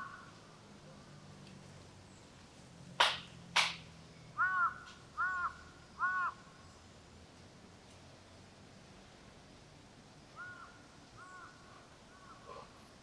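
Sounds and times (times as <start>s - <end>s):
sharp cracks: 3.0s - 3.9s
crow cawing: 4.4s - 6.5s, 10.4s - 12.7s.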